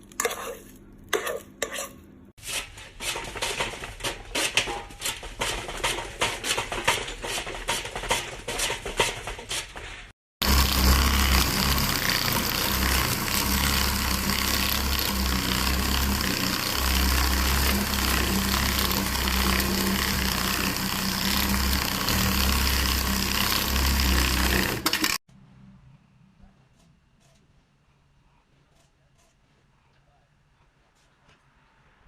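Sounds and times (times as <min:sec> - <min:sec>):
machine humming: 0:10.4 - 0:25.2.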